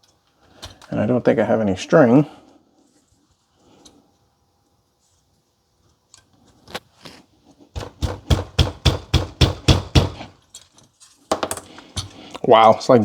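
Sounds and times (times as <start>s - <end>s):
hard knocks on cpu cooler: 7.8s - 10.2s.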